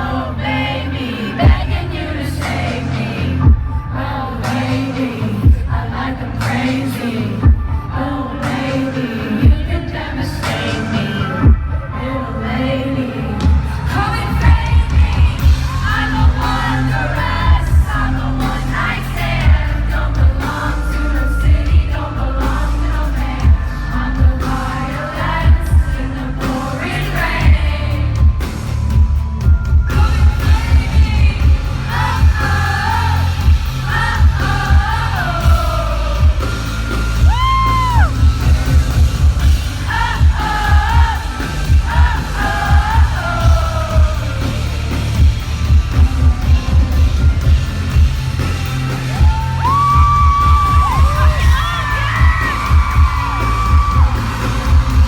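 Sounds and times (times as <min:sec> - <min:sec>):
woman singing: 0:00.0 - 0:28.6, 0:29.7 - 0:38.6, 0:39.6 - 0:45.3, 0:49.0 - 0:55.0
heavy kick-drum beat: 0:01.4 - 0:02.8, 0:03.4 - 0:04.8, 0:05.4 - 0:06.7, 0:07.4 - 0:08.0, 0:09.4 - 0:09.9, 0:13.5 - 0:20.7, 0:23.4 - 0:24.8, 0:25.4 - 0:26.6, 0:27.4 - 0:55.0
loud band track: 0:13.4 - 0:55.0.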